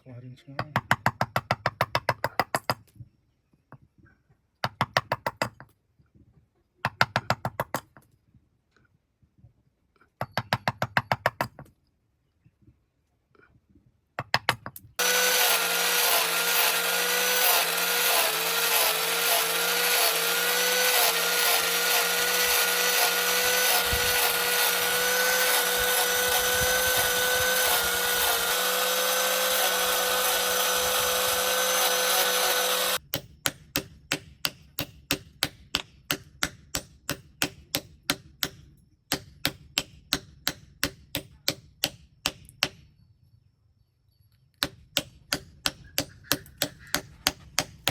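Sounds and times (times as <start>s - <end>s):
power grinder on steel: 15.0s - 33.0s.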